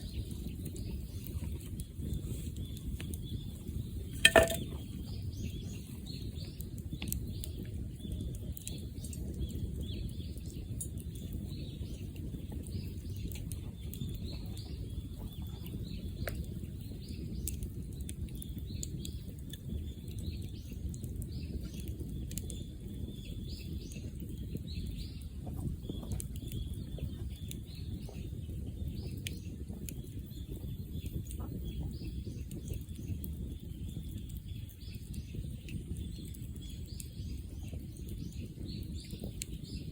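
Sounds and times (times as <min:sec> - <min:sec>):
bonfire flames rumbling: 0:00.0 - 0:39.9
small birds chirping: 0:00.0 - 0:39.9
fire crackles and pops: 0:15.8 - 0:39.9.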